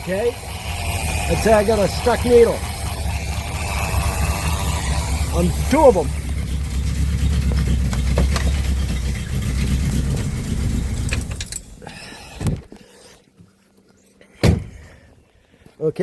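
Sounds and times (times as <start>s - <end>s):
car engine idling: 0.0s - 12.7s.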